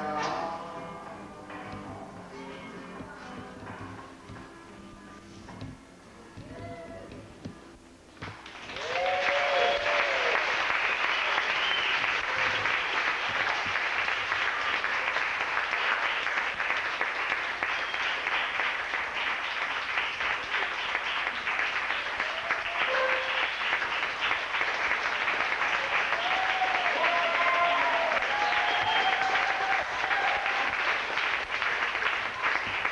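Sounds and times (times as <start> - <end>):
audience applauding: 8.3 - 32.9
crowd shouts: 8.8 - 10.5, 26.2 - 30.8.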